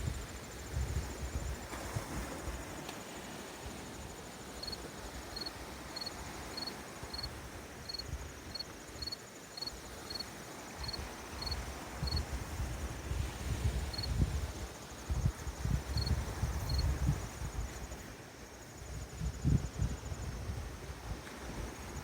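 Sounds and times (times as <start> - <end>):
cricket chirping: 0.0 - 20.6
high insect trill: 2.6 - 12.9, 13.5 - 20.5.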